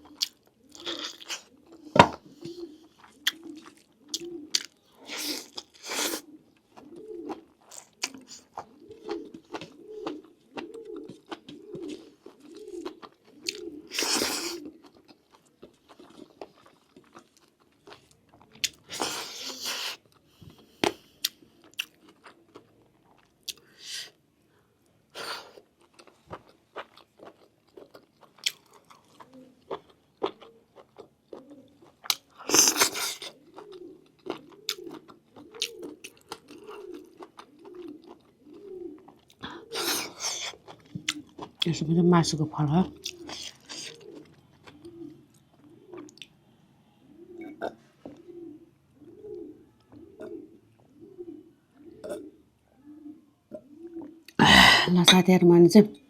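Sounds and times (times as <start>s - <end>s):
wet chewing sounds: 0.0s - 24.2s, 25.1s - 41.8s, 42.9s - 46.4s.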